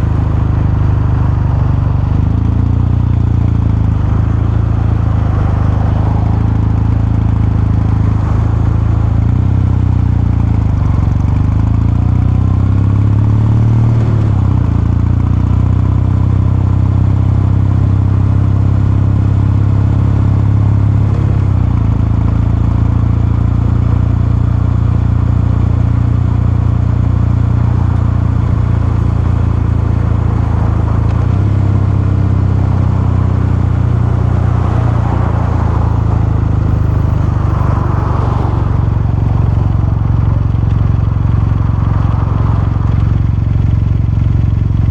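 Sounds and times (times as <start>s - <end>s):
motorcycle engine and exhaust: 0.0s - 44.9s.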